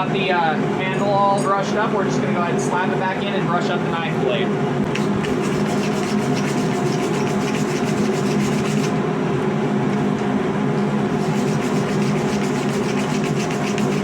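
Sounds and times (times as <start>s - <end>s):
wire brush scrubbing steel: 4.9s - 8.9s, 11.1s - 14.0s.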